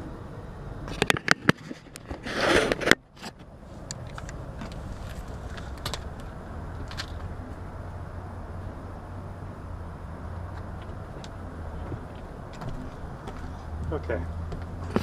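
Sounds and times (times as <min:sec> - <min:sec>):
low hum: 0:00.0 - 0:15.0
handling rustle: 0:01.0 - 0:07.4.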